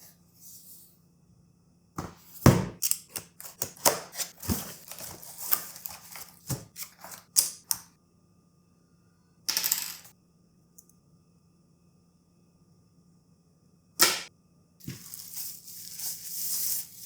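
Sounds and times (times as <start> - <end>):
packaging knocks clicks and rustles: 2.9 - 7.7.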